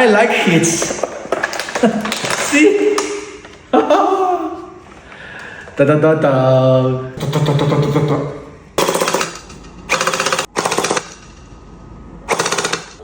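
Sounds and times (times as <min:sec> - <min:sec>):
airsoft gun rapid bursts: 0:08.8 - 0:11.3, 0:12.3 - 0:13.0.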